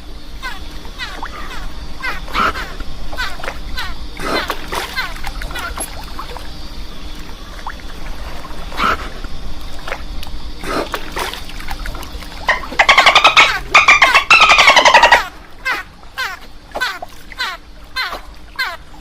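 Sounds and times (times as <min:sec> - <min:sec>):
light splashing water: 0:00.0 - 0:19.0
dolphin chattering call: 0:00.4 - 0:05.8, 0:12.4 - 0:19.0.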